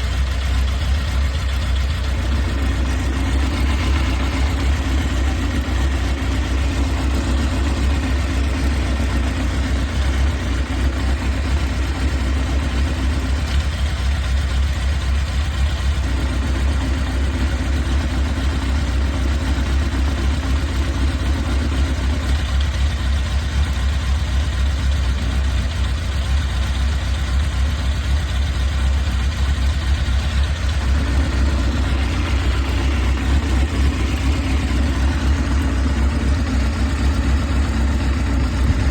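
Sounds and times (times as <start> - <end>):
motorcycle engine idling: 0.0 - 38.9
engine whirring noise: 38.5 - 38.9.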